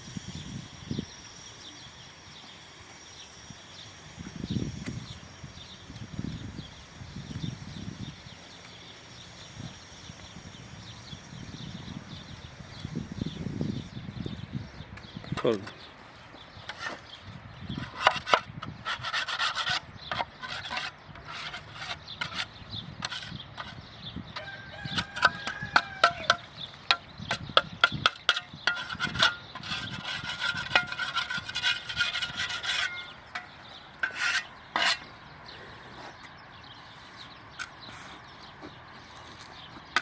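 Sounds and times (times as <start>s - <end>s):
shovel scraping: 27.9s - 35.1s.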